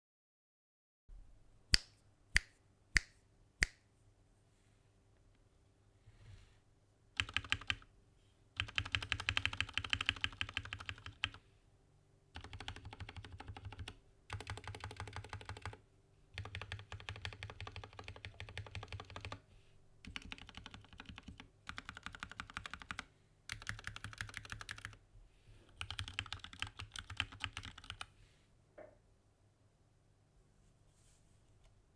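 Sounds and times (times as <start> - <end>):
mechanical keyboard typing: 7.2 - 7.9, 8.6 - 11.4, 12.4 - 15.8, 16.4 - 19.4, 20.0 - 25.0, 25.7 - 28.1.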